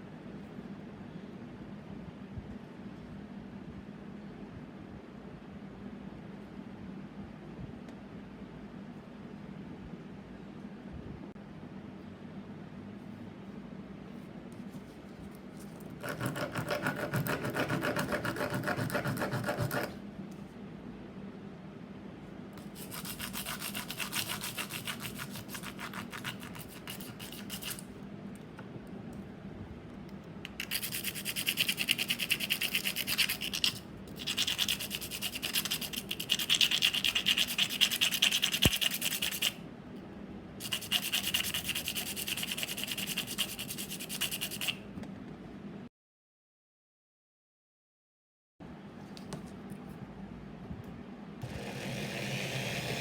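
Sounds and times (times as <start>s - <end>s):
metal being filed: 16.0s - 20.0s.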